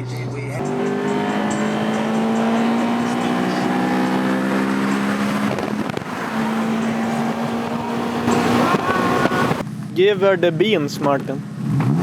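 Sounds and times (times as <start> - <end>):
car engine running: 0.6 - 9.8.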